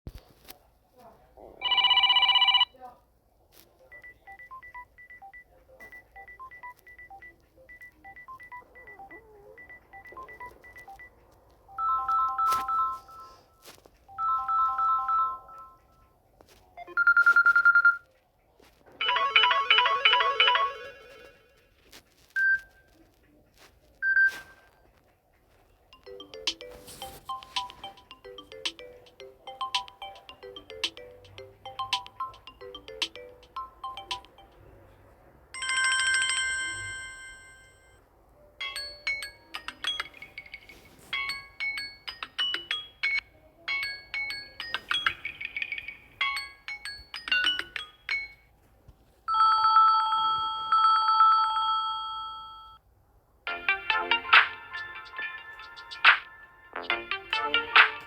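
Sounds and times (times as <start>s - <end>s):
phone ringtone melody: 1.6s - 2.7s, 3.9s - 11.1s, 11.7s - 15.9s, 16.8s - 18.1s, 19.0s - 21.5s, 26.0s - 34.6s, 35.6s - 38.0s, 38.6s - 48.5s, 49.3s - 52.8s, 53.5s - 58.0s
short electronic ringtone melodies: 19.0s - 21.2s, 26.0s - 34.5s.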